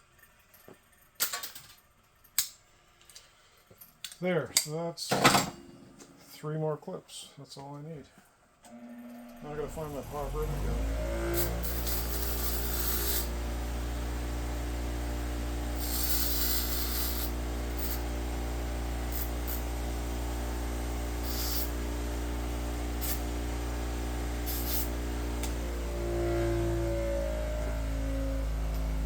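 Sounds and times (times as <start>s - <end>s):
steady low hum: 9.4s - 29.0s.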